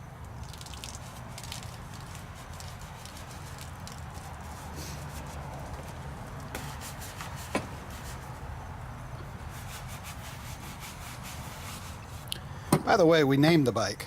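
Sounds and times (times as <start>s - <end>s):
steady low hum: 0.0s - 13.4s
scrub brush scraping: 0.6s - 8.4s, 9.4s - 12.3s.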